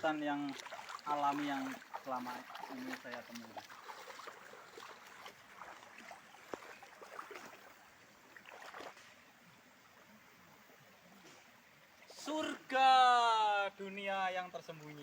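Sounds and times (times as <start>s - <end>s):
river water running: 0.0s - 15.0s
water trickles and splashes: 0.0s - 15.0s.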